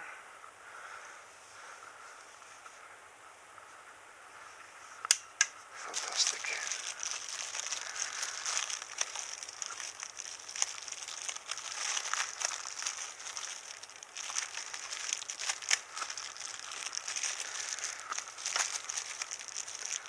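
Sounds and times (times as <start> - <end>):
packaging rustling and crinkling: 5.8 - 20.0.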